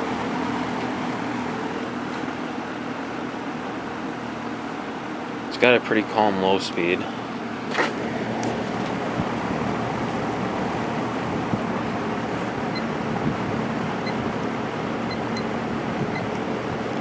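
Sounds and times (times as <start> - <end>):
box fan running: 0.0 - 17.0.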